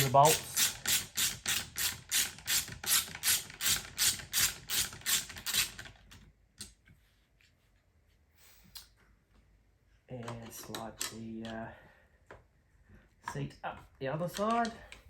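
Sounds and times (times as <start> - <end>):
ratchet wrench clicking: 0.0 - 5.8.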